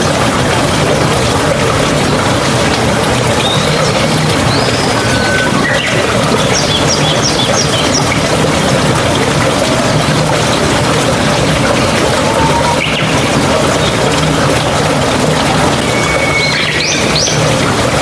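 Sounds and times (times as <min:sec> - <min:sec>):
flowing water rushing: 0:00.0 - 0:18.0.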